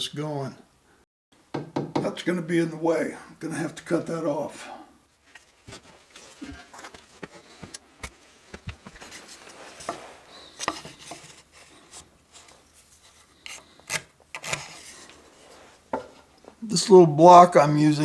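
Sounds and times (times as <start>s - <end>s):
wood knocks and clicks: 1.5s - 2.1s
wood scraping rubs: 8.7s - 16.6s.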